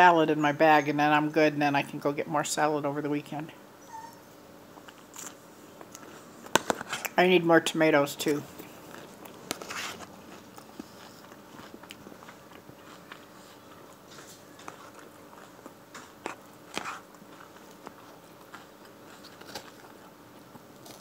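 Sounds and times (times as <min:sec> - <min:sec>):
chewing lettuce crunches: 0:04.8 - 0:06.2, 0:08.6 - 0:21.0.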